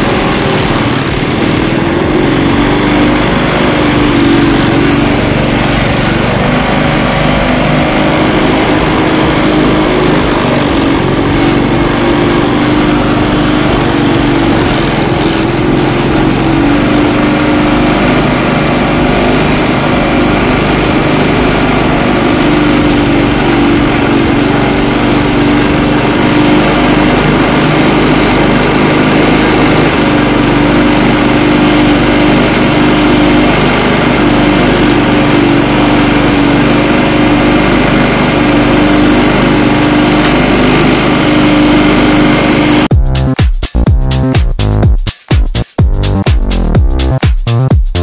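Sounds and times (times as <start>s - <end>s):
small engine running steadily: 0.0s - 48.0s.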